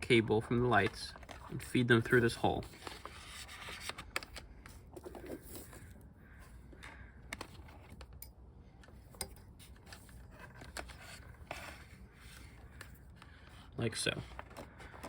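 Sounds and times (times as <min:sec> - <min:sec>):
light handling clicks and rustles: 0:00.5 - 0:03.1, 0:06.7 - 0:15.0.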